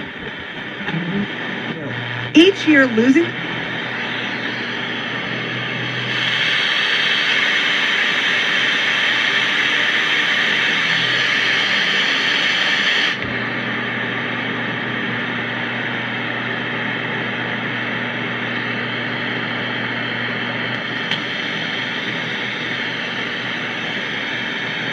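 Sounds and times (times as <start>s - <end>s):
static hiss: 0.0s - 13.3s, 20.8s - 24.9s
low steady hum: 0.2s - 6.4s.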